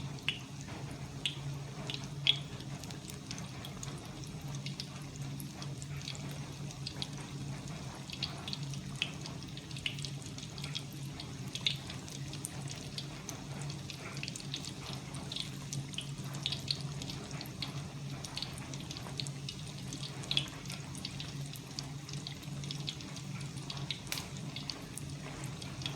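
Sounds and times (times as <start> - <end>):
rainwater running and dripping: 0.0 - 25.9.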